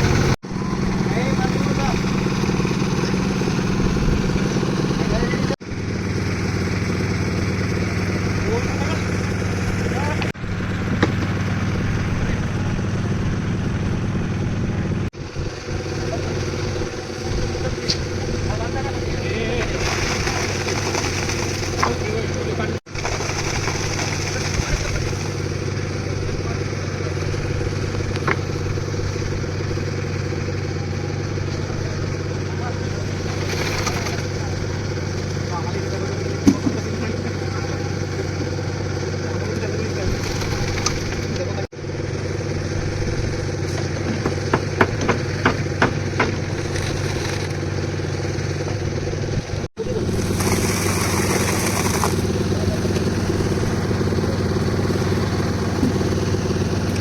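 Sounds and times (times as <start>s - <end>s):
concrete mixer engine running: 0.0s - 57.0s
sharp knocks: 43.8s - 46.9s.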